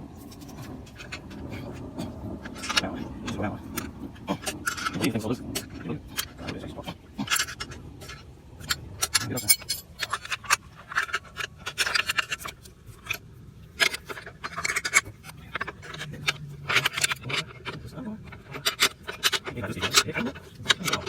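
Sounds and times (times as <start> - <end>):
wrench clinking on bolts: 7.2 - 11.2.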